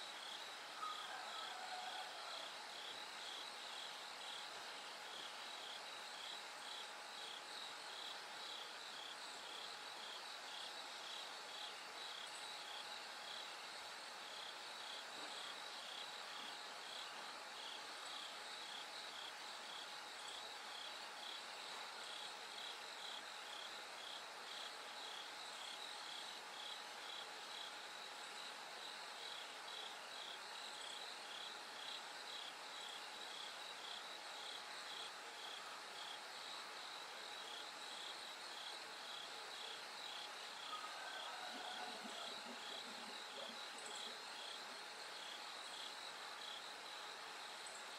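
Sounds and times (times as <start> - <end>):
crickets chirping: 0.1 - 47.9.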